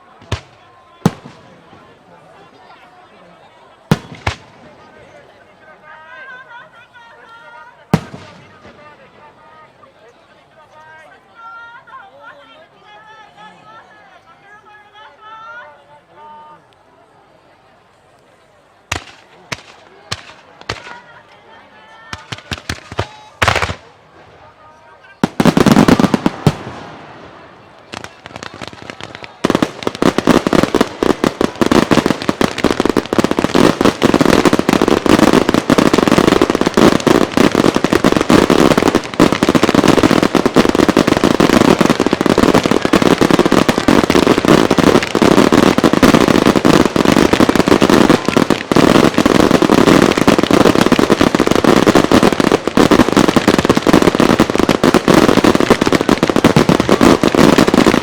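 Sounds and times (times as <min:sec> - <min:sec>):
fireworks banging and crackling: 0:00.0 - 0:02.8, 0:03.8 - 0:05.4, 0:07.8 - 0:09.5, 0:18.9 - 0:21.4, 0:22.0 - 0:58.0.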